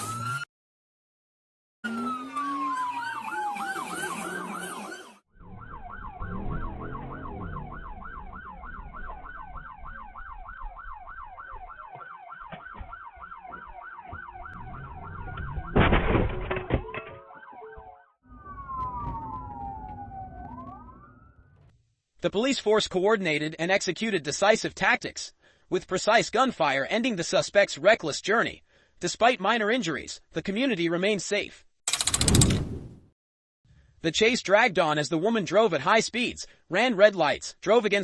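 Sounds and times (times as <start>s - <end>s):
police siren wailing and yelping: 1.8s - 15.9s, 17.2s - 21.7s
loud burst: 31.9s - 33.0s.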